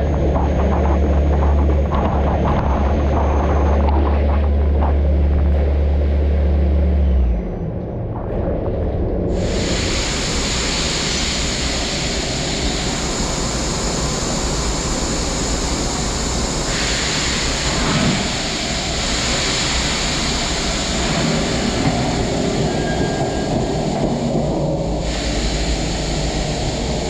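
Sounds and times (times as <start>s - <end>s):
low machine hum: 0.0s - 27.0s
rushing hiss: 9.3s - 27.0s.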